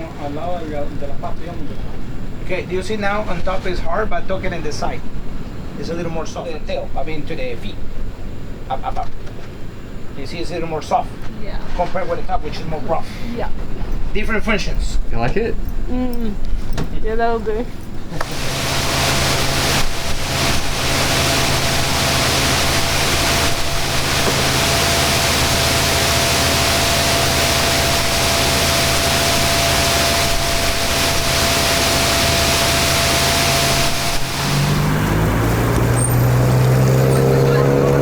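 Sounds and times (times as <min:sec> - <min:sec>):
wind: 0:00.0 - 0:38.0
boat motor running: 0:18.0 - 0:38.0
water rushing: 0:18.2 - 0:38.0.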